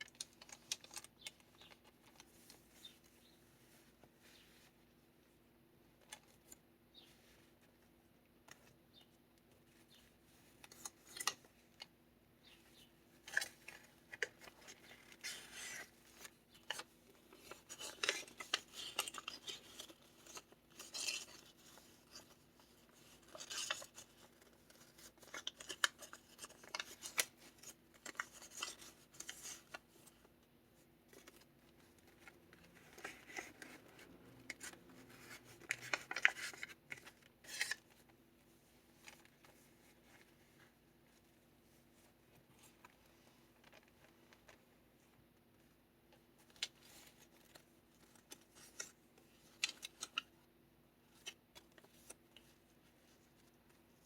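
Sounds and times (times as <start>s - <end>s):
paper rustling and crinkling: 13.2s - 30.3s, 31.1s - 38.2s.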